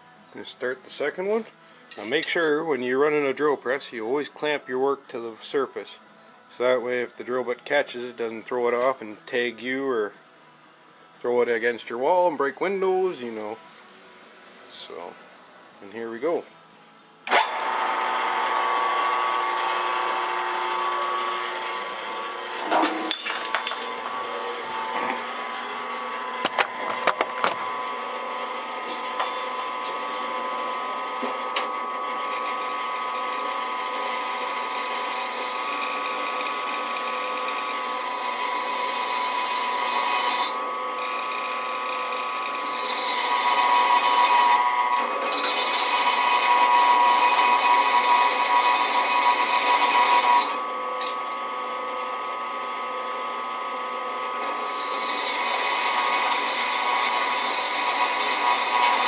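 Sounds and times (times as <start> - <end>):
drill press cutting steel: 17.2 - 51.5, 54.0 - 59.0.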